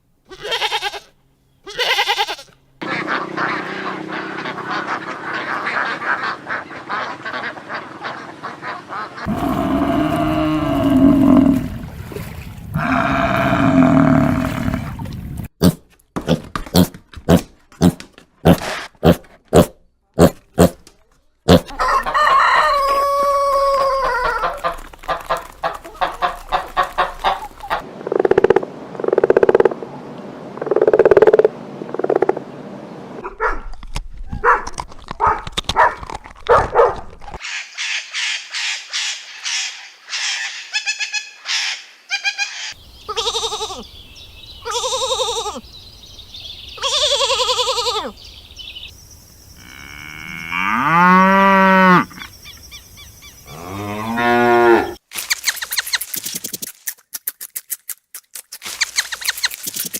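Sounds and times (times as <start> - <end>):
farm animal calls: 0.3 - 11.8, 38.2 - 48.9
rooster crowing: 21.7 - 24.4.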